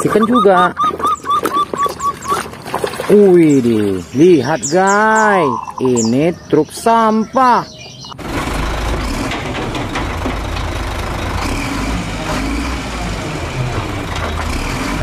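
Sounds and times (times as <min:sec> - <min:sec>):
truck engine idling: 0:08.2 - 0:15.0.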